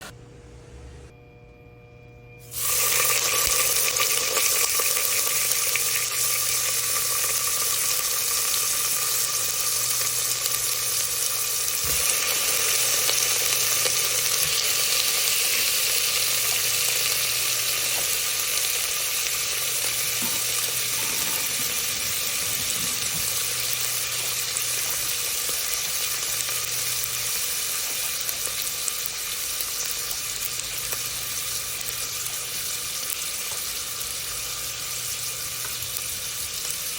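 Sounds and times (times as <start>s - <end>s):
low steady hum: 0.0s - 3.0s
tap water running into sink: 19.8s - 24.5s.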